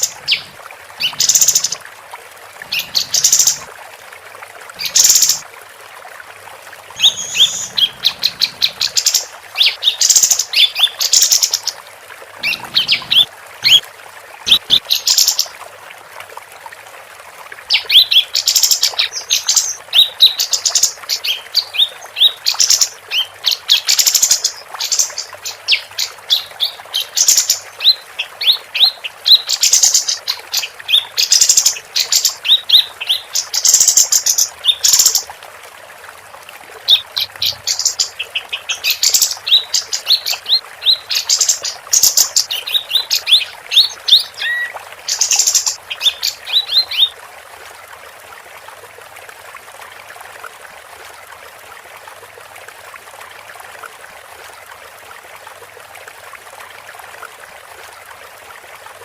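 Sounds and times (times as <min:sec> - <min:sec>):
bird chirping and trilling: 0:00.0 - 0:01.8, 0:02.7 - 0:03.6, 0:07.0 - 0:11.7, 0:12.4 - 0:13.8, 0:36.9 - 0:47.1.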